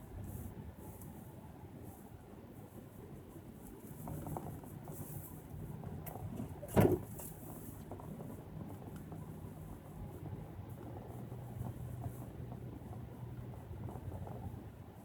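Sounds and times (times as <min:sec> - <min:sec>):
car engine and road noise: 0:03.2 - 0:15.0
short thump: 0:06.7 - 0:07.2.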